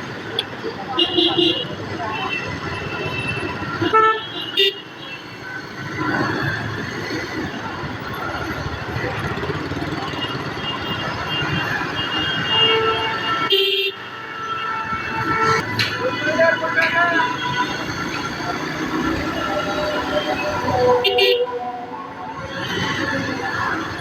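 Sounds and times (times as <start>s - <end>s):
road traffic: 0.0s - 24.0s
vehicle horns honking: 10.2s - 18.0s, 19.0s - 21.6s.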